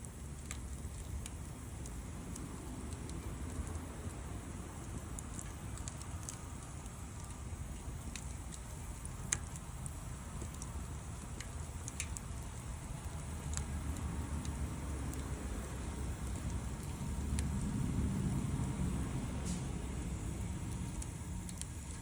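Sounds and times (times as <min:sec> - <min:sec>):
wood fire crackling: 0:00.0 - 0:22.0
low rumble: 0:12.4 - 0:21.8.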